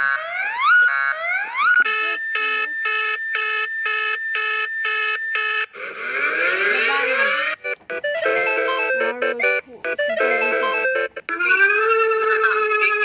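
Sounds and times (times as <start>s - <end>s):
steady high alarm tone: 0.0s - 11.8s
pulsing beeps: 5.4s - 11.8s.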